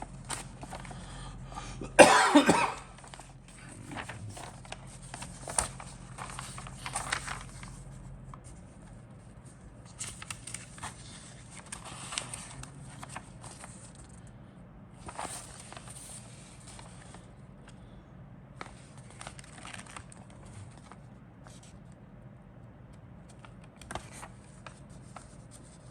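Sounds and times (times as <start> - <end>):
person coughing: 1.6 - 3.0.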